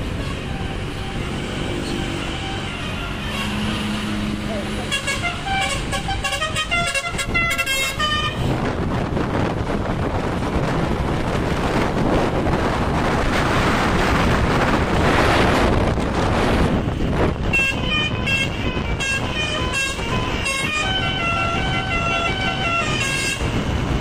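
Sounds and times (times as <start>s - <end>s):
rush of vehicle noise: 0.0s - 24.0s
bus horn playing a quick tune: 0.1s - 4.2s, 4.8s - 8.6s, 16.6s - 23.8s.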